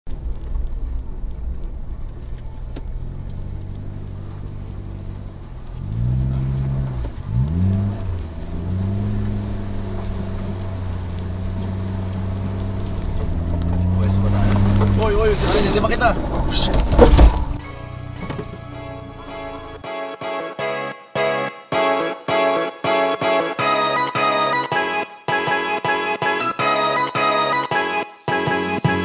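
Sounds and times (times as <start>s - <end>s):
car engine pulling: 0.1s - 19.8s.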